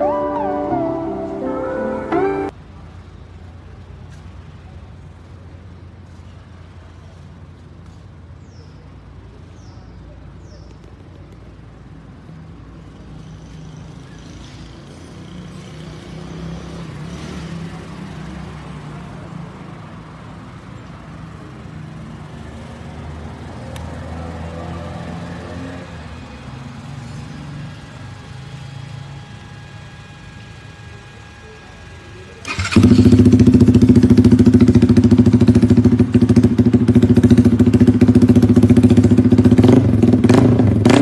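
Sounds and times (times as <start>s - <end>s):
motorcycle engine running: 32.4s - 41.0s.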